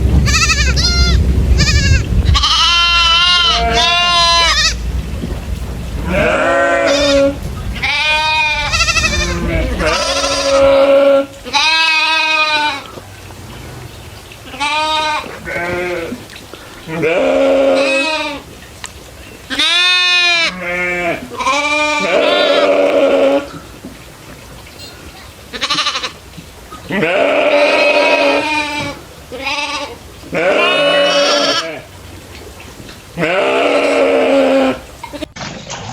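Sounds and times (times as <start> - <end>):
goats bleating: 0.2 - 4.9, 6.0 - 13.0, 14.4 - 16.2, 16.8 - 18.4, 19.5 - 23.6, 24.8 - 26.2, 26.8 - 31.9, 33.2 - 35.3.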